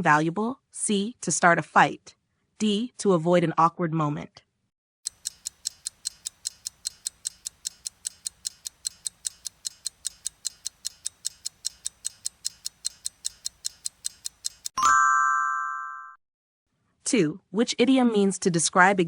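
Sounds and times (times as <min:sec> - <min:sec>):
countdown timer ticking: 0:05.1 - 0:14.8.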